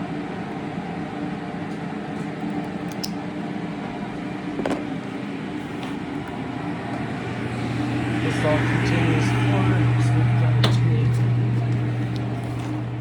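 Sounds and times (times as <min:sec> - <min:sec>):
machine hum: 0:00.0 - 0:13.0.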